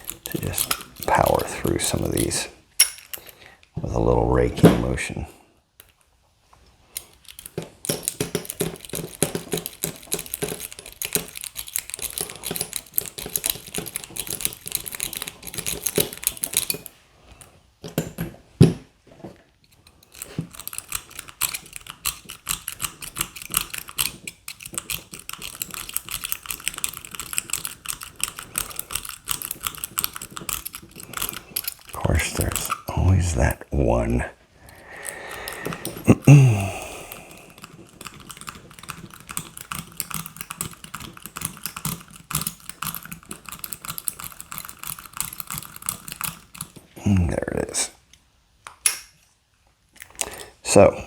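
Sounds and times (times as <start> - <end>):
lock pick raking padlock pins: 0.0 - 3.4, 6.9 - 17.0, 19.6 - 33.5, 36.8 - 46.9.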